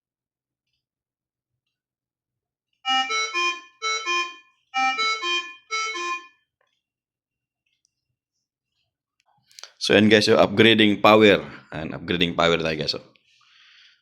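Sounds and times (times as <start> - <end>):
medical alarm melody: 2.9 - 6.4.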